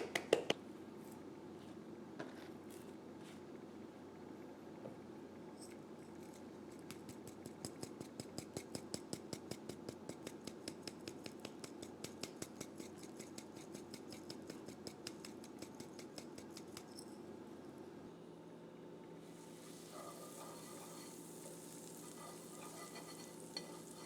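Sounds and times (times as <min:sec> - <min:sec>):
rapid tapping of kitchen utensil: 0:06.8 - 0:17.0.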